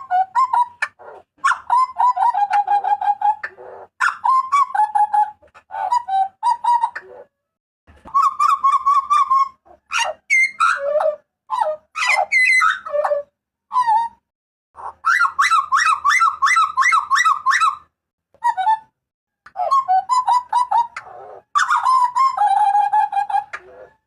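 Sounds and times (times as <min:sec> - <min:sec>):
bird whistled calls: 0:08.0 - 0:09.6.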